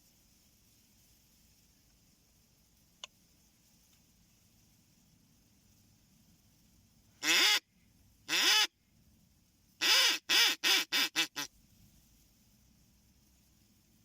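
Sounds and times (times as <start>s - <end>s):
duck quacking: 7.2s - 7.6s, 8.3s - 8.7s, 9.8s - 11.5s.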